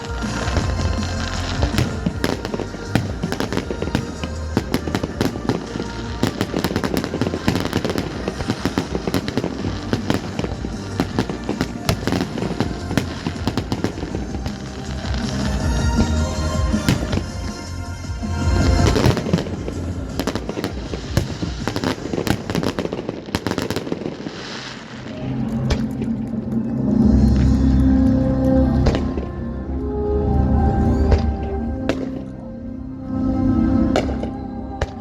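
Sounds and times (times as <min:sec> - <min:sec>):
fireworks bangs and crackling: 0:00.0 - 0:27.9
music playing: 0:00.0 - 0:35.0.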